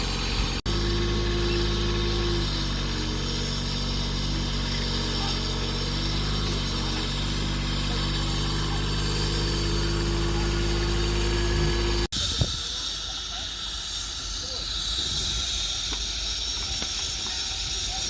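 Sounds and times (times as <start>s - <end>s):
engine running steadily: 0.0s - 13.4s.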